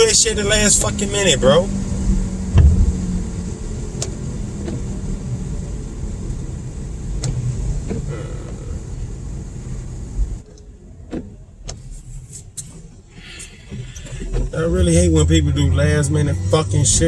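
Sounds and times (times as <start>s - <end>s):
car road rumble: 0.0s - 17.0s
tyre hiss on wet road: 2.3s - 10.4s.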